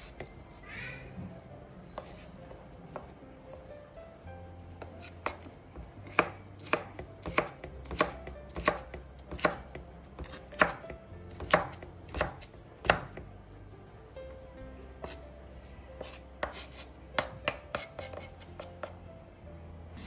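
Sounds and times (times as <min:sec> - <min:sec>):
knife chopping on cutting board: 0:06.1 - 0:13.2, 0:15.0 - 0:15.2, 0:16.0 - 0:18.9.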